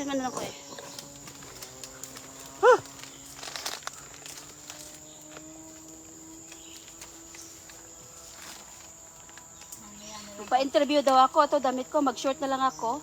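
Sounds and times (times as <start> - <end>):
high insect buzz: 0.0 - 13.0
rustling: 0.7 - 11.4
footsteps on a trail: 0.8 - 10.7.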